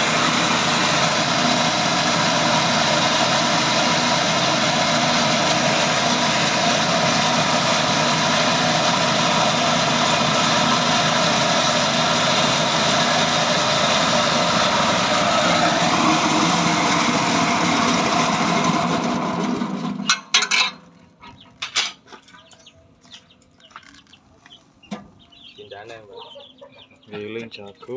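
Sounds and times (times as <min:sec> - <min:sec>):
chopper machine grinding corn: 0:00.0 - 0:21.7.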